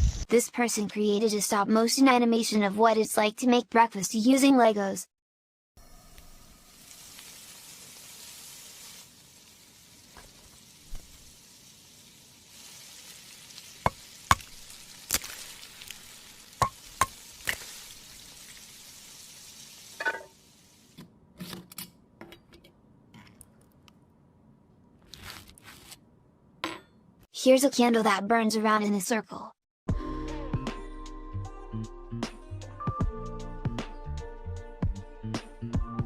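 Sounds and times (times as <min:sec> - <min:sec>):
food sizzling in a pan: 0:05.8 - 0:21.0.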